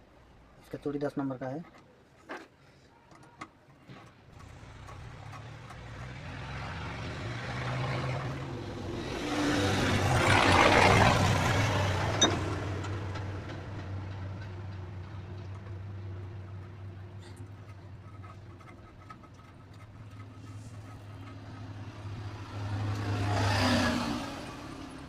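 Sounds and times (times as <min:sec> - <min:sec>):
vehicle engine passing by: 0:04.3 - 0:17.4, 0:20.0 - 0:25.0.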